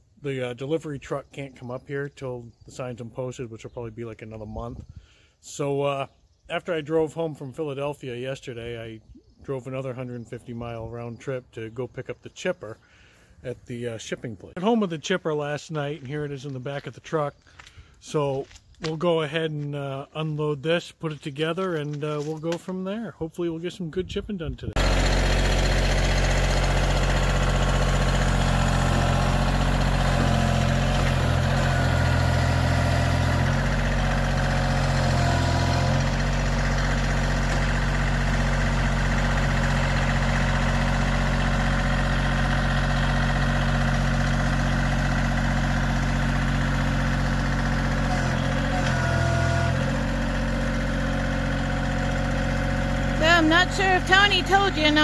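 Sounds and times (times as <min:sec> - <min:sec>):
tractor engine running: 0:24.7 - 0:55.0.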